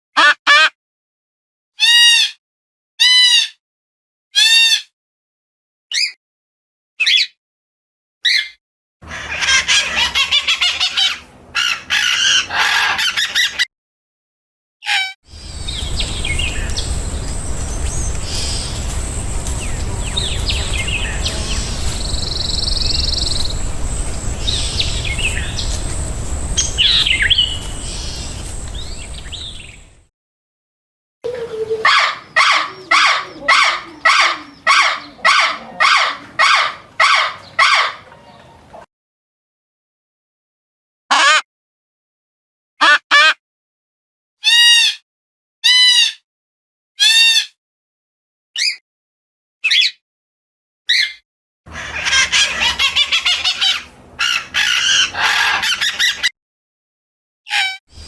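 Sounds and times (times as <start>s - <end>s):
bird repeated loud call: 8.3s - 13.6s, 14.9s - 30.0s, 50.9s - 56.3s
birds chirping and calling: 8.3s - 13.6s, 14.9s - 30.0s, 31.3s - 38.8s, 50.9s - 56.3s
steady background rush: 15.3s - 30.0s.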